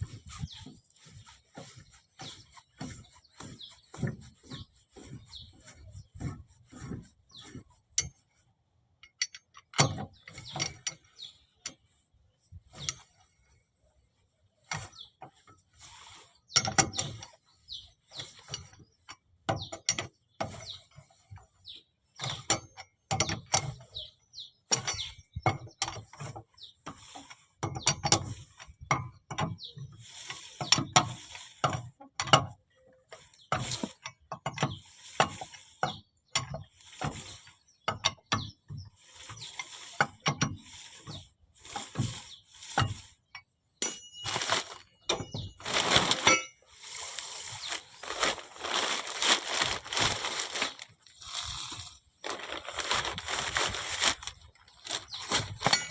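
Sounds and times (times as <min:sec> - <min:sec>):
metal tools knocking and clinking: 0:43.8 - 0:46.6, 0:55.4 - 0:55.9.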